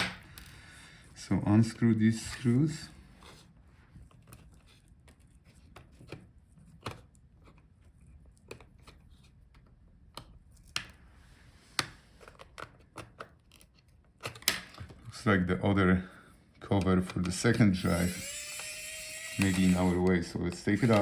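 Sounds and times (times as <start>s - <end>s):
small screwdriver clicks: 17.8s - 21.0s.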